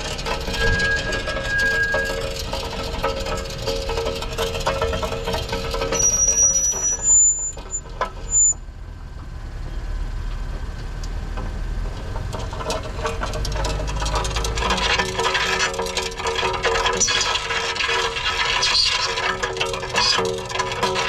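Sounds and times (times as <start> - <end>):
low rumble: 0.0 - 5.9
rough brake scraping: 0.0 - 8.6
high-pitched brake squeals: 0.3 - 3.8, 5.2 - 8.6.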